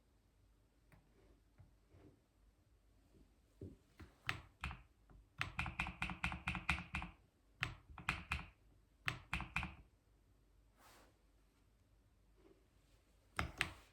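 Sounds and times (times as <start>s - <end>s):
typing on a keyboard: 4.2s - 9.9s.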